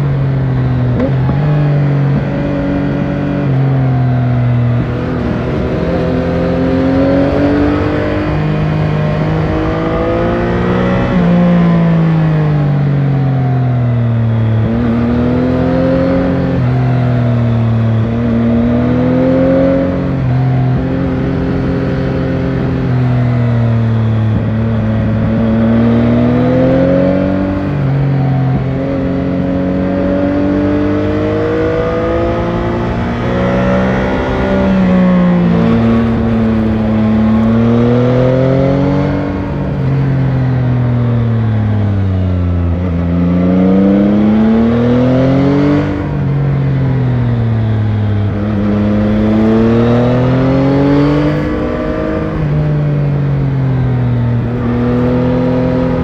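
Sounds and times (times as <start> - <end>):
motorcycle engine accelerating: 0.0 - 56.0.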